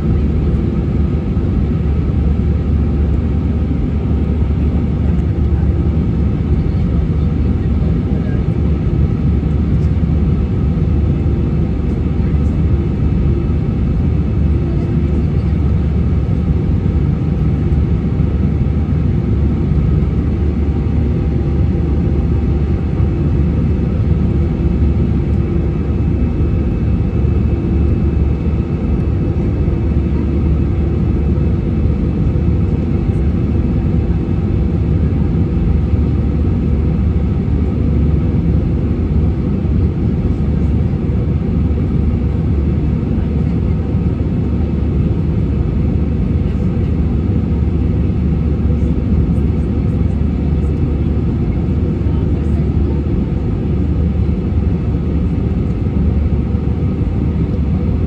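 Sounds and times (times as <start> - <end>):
airliner engine rumble in cabin: 0.0 - 58.0.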